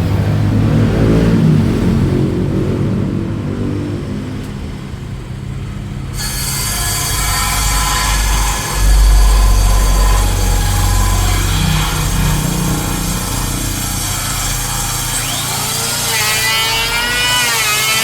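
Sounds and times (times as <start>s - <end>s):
power tool humming and whining: 6.1s - 18.0s.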